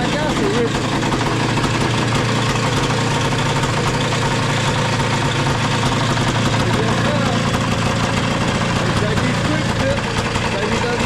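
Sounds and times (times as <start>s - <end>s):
engine idling: 0.0s - 11.0s.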